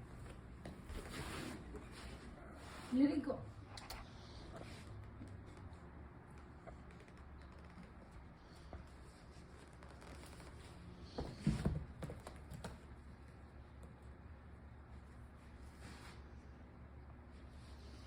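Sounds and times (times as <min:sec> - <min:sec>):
scuffle on floor: 0:00.1 - 0:03.4, 0:08.5 - 0:12.8.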